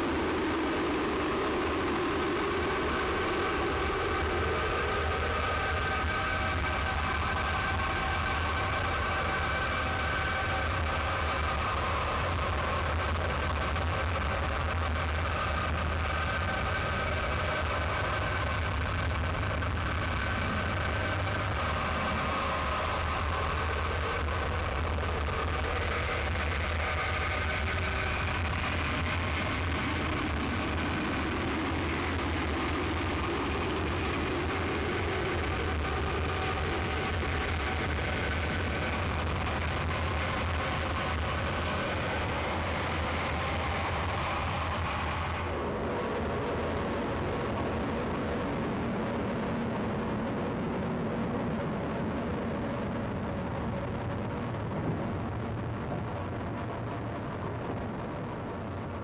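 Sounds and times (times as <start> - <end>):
constant low hum: 0.0 - 59.0
harsh noise wall: 0.0 - 59.0
dense rumbling noise: 46.6 - 59.0.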